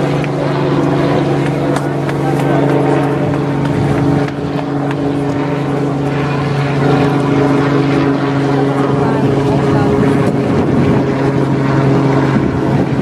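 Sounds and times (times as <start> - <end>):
engine-like hum: 0.0 - 13.0.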